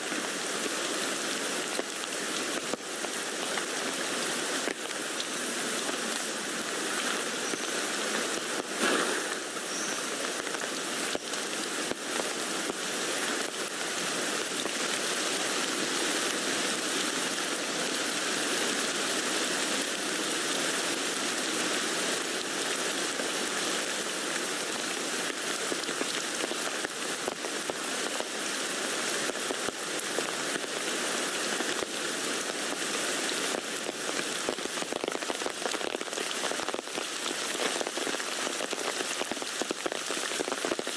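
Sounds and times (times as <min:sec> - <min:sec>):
rain falling on a tent: 0:00.0 - 0:40.9
thump: 0:08.8 - 0:09.4.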